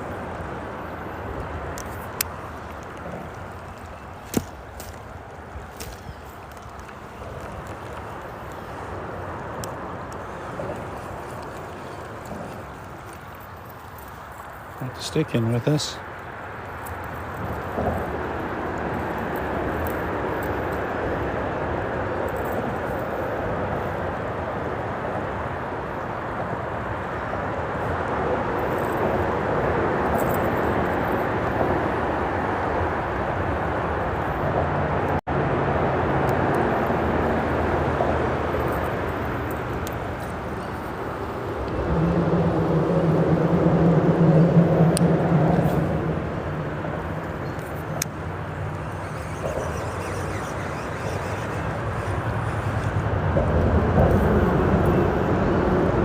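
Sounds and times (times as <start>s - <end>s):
freeway traffic rumbling: 0.0s - 56.0s
small stream rushing: 0.0s - 56.0s
heavy vehicle engine hum: 16.0s - 56.0s.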